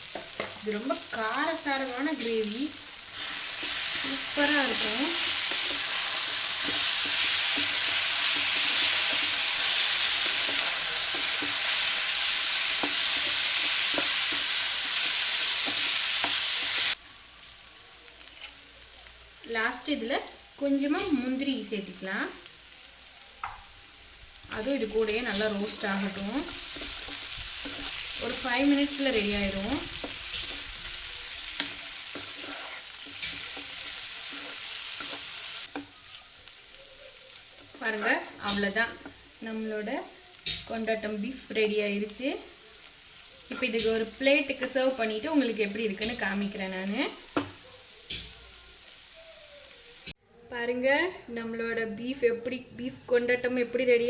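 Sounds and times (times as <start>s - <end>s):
meat sizzling in a pan: 0.0s - 50.2s
light stirring scrapes: 18.2s - 18.6s, 25.0s - 35.9s.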